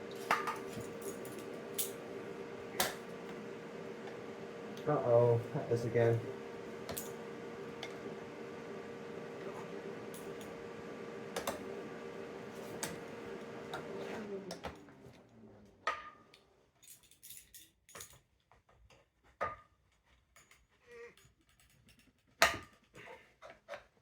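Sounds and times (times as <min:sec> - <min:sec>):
welder arc humming and hissing: 0:00.0 - 0:14.1.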